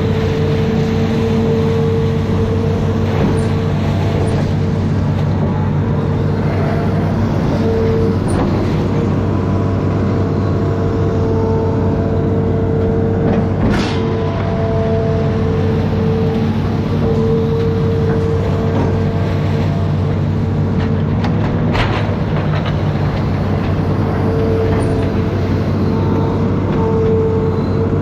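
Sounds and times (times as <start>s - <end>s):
diesel engine running with whine: 0.0s - 28.0s.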